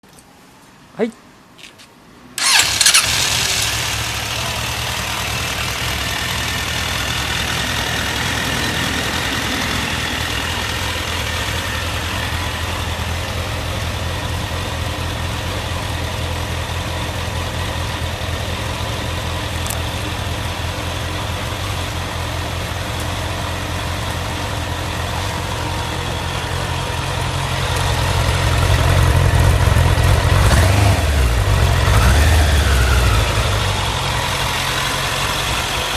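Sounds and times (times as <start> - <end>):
electric starter cranking: 2.4 - 4.1
motorcycle engine idling: 2.4 - 35.9.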